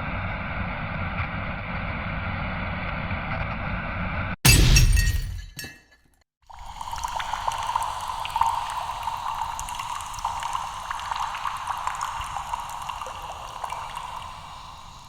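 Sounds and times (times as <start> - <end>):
fizzing crackling hiss: 6.5 - 15.0.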